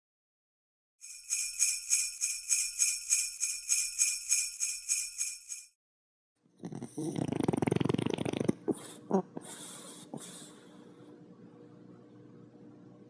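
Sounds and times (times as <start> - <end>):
jingle bells shaken: 1.0 - 5.7.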